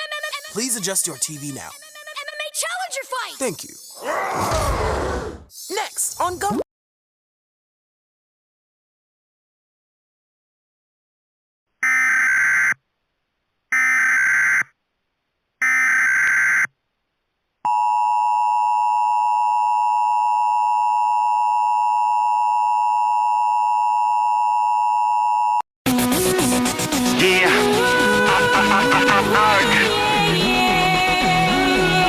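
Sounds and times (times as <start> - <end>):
buzzy data bursts: 0.0 - 4.0
long steady attention tone: 17.7 - 25.6
music: 25.9 - 32.0.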